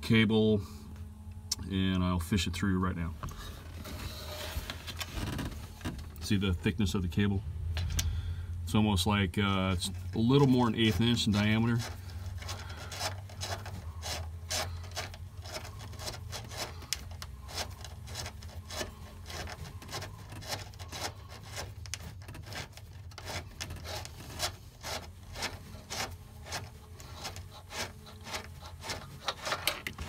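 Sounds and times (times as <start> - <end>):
steady low hum: 0.0 - 30.0
cable rubbing and scraping: 3.6 - 6.4, 9.6 - 30.0.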